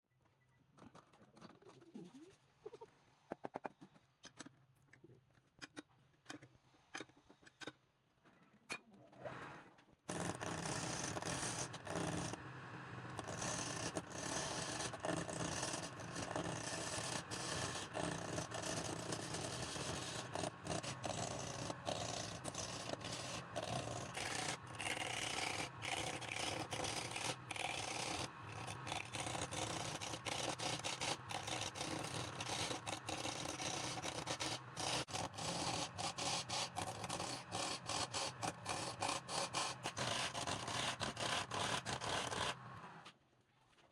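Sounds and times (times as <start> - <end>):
tool scraping spinning wood: 10.1 - 43.0
wood lathe turning: 10.1 - 43.0.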